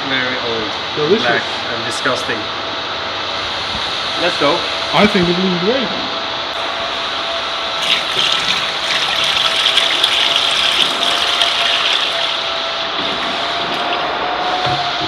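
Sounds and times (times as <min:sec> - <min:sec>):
steady background whir: 0:00.0 - 0:15.0
oil pouring in a gushing stream: 0:07.8 - 0:14.2.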